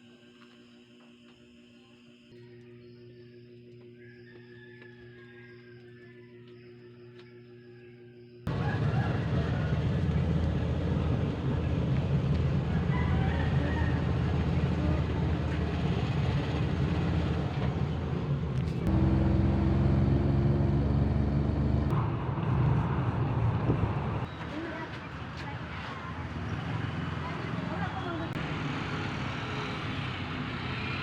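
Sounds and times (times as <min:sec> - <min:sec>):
road noise: 0:08.5 - 0:31.0
vehicle engine hum: 0:08.5 - 0:31.0.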